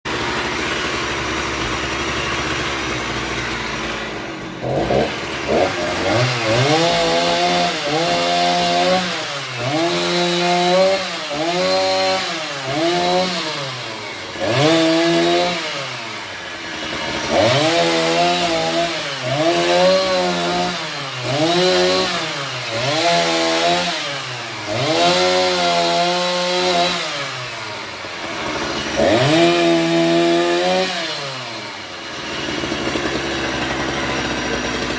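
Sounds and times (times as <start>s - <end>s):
chainsaw cutting wood: 0.1s - 34.9s.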